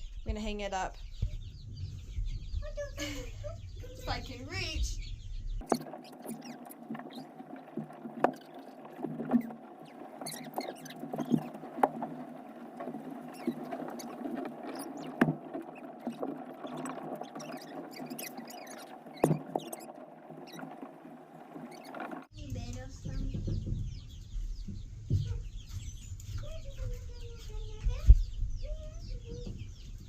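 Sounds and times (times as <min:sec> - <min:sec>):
chickens clucking: 0:05.6 - 0:30.0.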